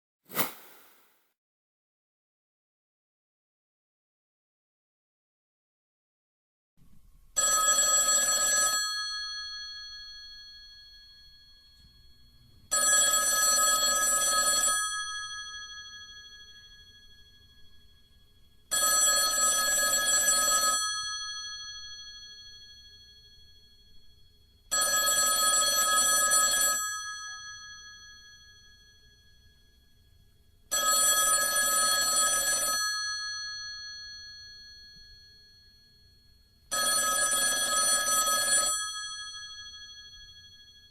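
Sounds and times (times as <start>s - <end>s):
telephone ringing: 7.4s - 11.9s, 12.7s - 17.2s, 18.7s - 23.2s, 24.7s - 29.0s, 30.7s - 40.9s.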